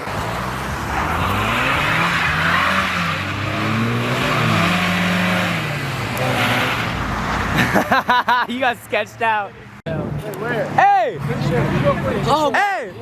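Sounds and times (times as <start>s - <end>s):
car engine revving: 0.0s - 8.0s.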